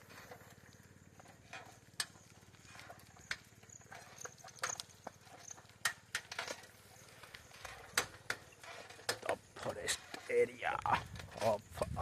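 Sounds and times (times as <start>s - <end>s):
sharp clicks and knocks: 3.2s - 10.3s.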